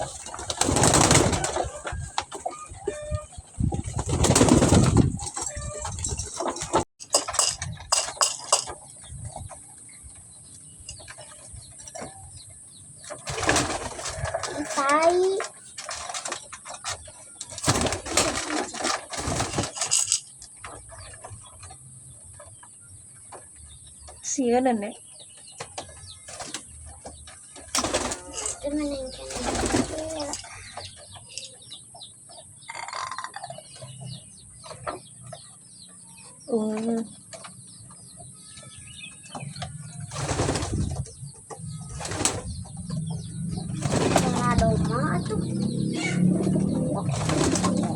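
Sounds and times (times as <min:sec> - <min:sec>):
birds chirping: 0:00.0 - 0:47.9
rooster crowing: 0:01.2 - 0:03.1, 0:14.0 - 0:15.1.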